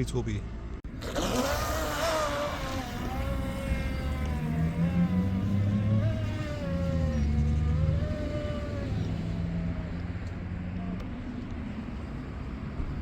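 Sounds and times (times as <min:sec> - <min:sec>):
model boat motor whine: 0:00.9 - 0:11.0.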